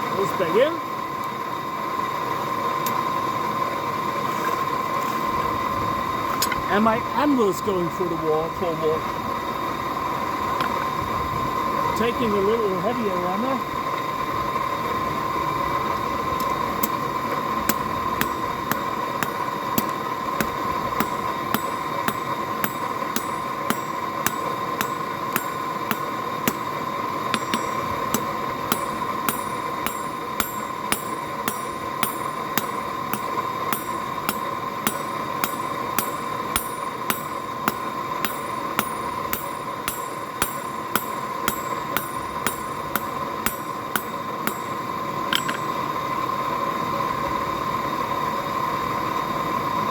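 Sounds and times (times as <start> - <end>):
steady high whine: 0.0 - 49.9
hammer striking steel on anvil: 17.7 - 45.9.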